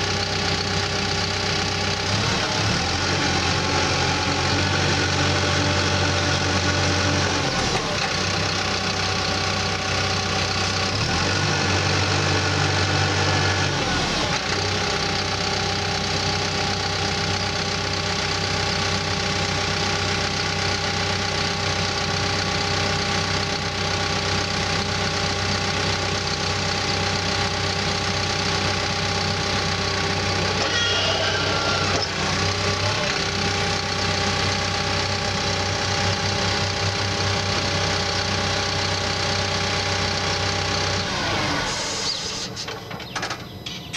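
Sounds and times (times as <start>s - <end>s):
bulldozer diesel engine running: 0.0s - 43.9s
rising whine: 30.6s - 33.0s.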